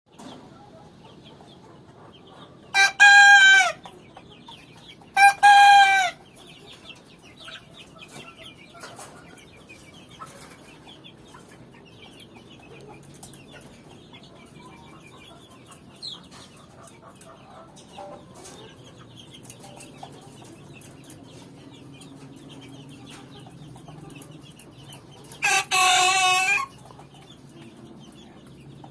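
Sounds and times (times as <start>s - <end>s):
faint clucking and chirping: 0.1s - 28.9s
rooster crowing: 2.8s - 3.8s, 5.2s - 6.2s.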